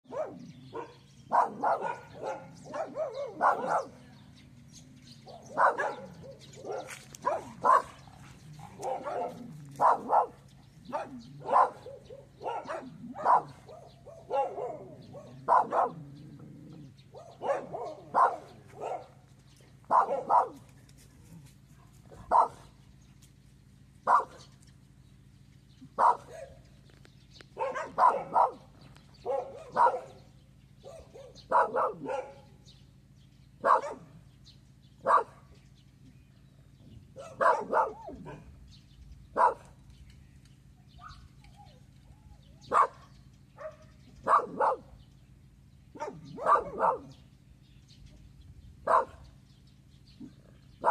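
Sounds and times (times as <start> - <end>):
dog barking: 0.1 - 4.0, 5.2 - 16.0, 17.2 - 19.2, 19.9 - 20.6, 21.8 - 22.8, 24.0 - 24.5, 26.0 - 26.6, 27.6 - 32.5, 33.6 - 34.2, 35.0 - 35.5, 37.2 - 38.5, 39.3 - 39.8, 41.0 - 41.3, 42.6 - 45.0, 45.9 - 47.2, 48.8 - 49.3.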